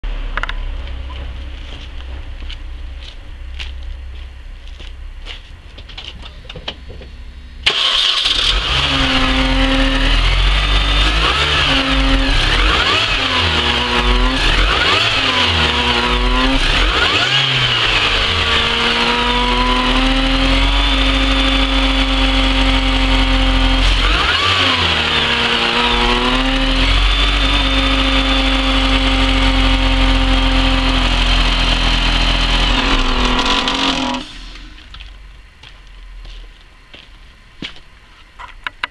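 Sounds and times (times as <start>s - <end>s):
high whine: 0.0s - 38.8s
car engine starting and revving: 7.6s - 35.0s.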